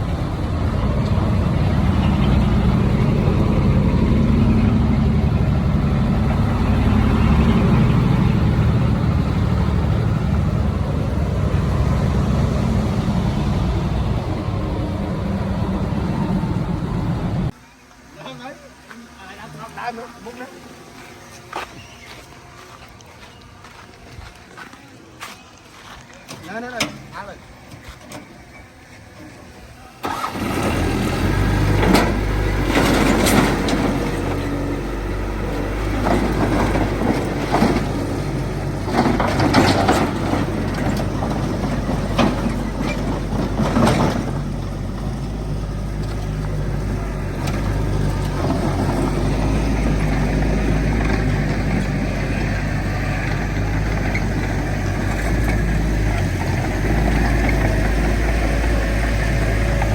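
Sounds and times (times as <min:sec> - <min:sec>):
diesel engine drone: 0:00.0 - 0:59.9
metallic clanks and knocks: 0:36.0 - 0:44.5.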